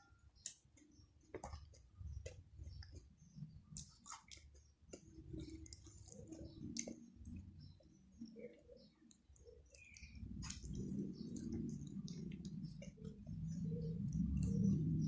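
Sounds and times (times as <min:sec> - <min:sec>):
person chewing: 0:00.4 - 0:07.6, 0:08.4 - 0:14.9
wet mouth clicks and smacks: 0:03.7 - 0:07.4, 0:09.1 - 0:13.3.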